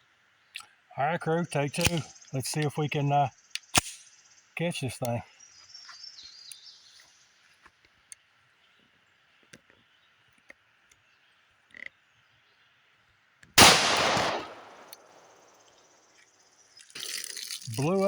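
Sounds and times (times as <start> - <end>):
crickets chirring: 1.0 - 7.2, 13.6 - 18.0
pistol shot: 13.6 - 15.6.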